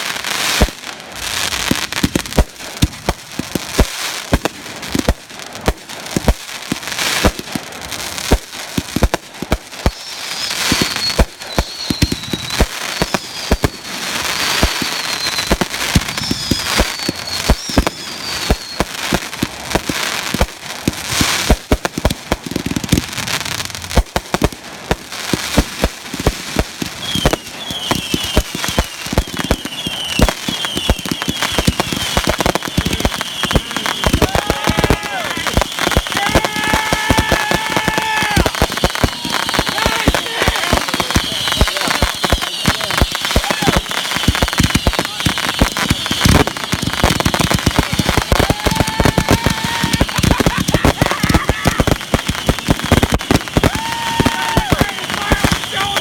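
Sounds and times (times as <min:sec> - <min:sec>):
fireworks bangs and crackling: 0:00.0 - 0:56.0
falling firework whistles: 0:09.8 - 0:19.4, 0:26.8 - 0:56.0
short repeated whistles: 0:09.9 - 0:18.9, 0:27.0 - 0:34.2.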